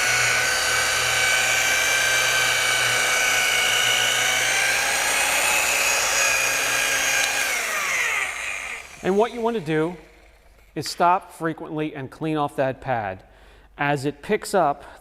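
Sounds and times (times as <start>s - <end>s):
polisher spinning down: 0.0s - 10.8s
rotary polisher whining: 0.0s - 10.8s.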